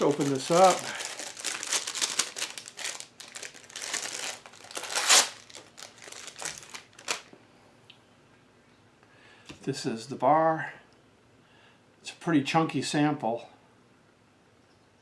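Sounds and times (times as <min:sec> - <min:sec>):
wrapper crinkling and rustling: 0:00.0 - 0:07.3.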